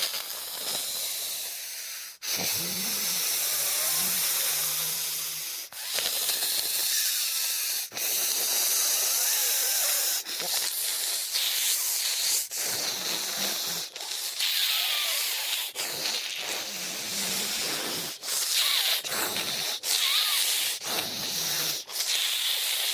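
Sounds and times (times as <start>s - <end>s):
zombie raspy hissing breaths: 0.0s - 22.9s
faint moaning: 2.4s - 5.4s.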